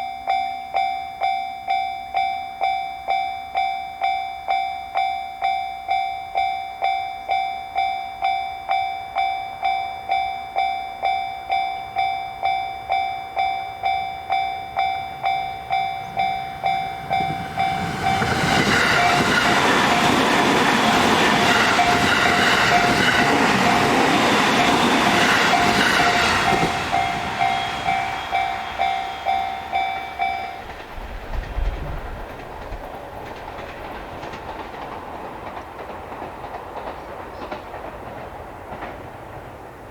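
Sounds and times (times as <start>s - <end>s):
railroad crossing alarm ringing: 0.0s - 31.0s
train passing: 2.1s - 39.9s.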